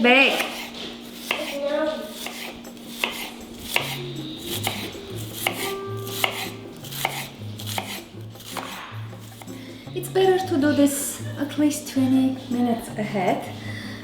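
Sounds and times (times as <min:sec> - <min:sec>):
knife striking cutting board: 0:00.4 - 0:01.6, 0:02.2 - 0:09.6.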